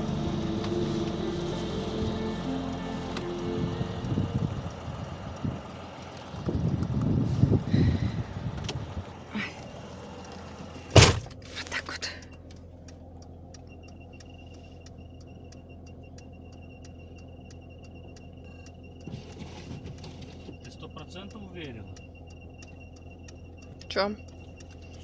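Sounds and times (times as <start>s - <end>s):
thin high tone: 0.0s - 5.7s
vehicle door slamming: 10.8s - 11.5s
faint ticks: 12.0s - 19.1s, 20.0s - 25.0s.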